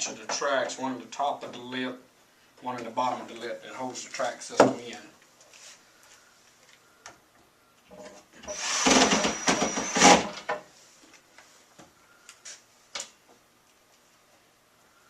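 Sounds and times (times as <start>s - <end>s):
power drill whining: 8.4s - 10.4s.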